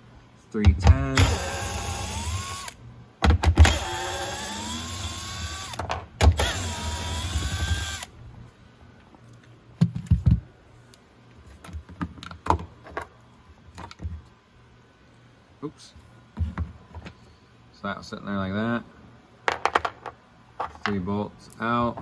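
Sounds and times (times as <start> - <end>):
cordless drill whining: 1.2 - 2.8, 3.6 - 8.1.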